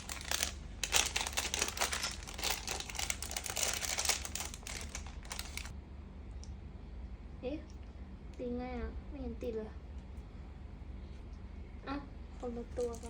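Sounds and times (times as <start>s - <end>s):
plastic packaging crinkling: 0.0s - 5.7s.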